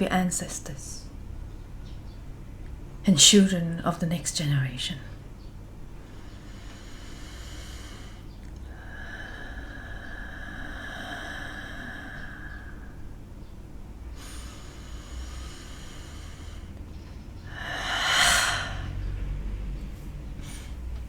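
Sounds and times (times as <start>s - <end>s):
faint steady tone: 5.1s - 20.7s
person breathing audibly: 6.0s - 21.0s.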